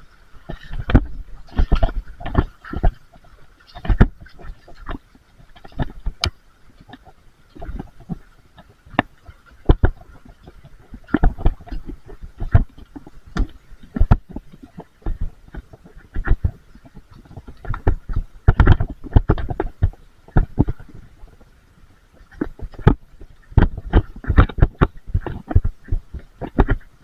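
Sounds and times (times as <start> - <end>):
knocks and thumps: 11.0 - 20.9, 22.4 - 26.9.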